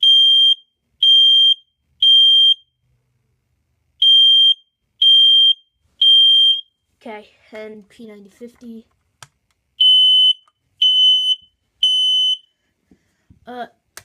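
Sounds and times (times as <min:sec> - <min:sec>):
smoke alarm beeping: 0:00.0 - 0:02.7, 0:04.0 - 0:06.7, 0:09.8 - 0:12.6.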